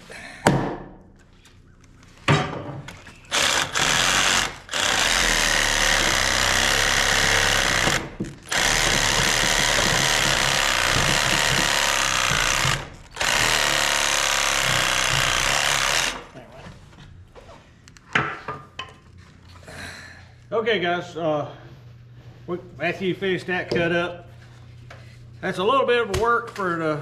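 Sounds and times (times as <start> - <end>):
reciprocating saw cutting wood: 3.3 - 16.4.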